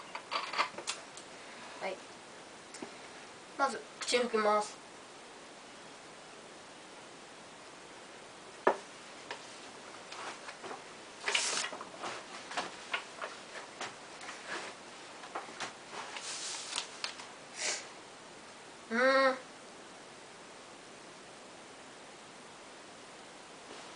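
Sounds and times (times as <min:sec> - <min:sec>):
soft ticks and rustles of tissue: 0:09.2 - 0:17.3
breathy nose sniffs: 0:17.5 - 0:17.9.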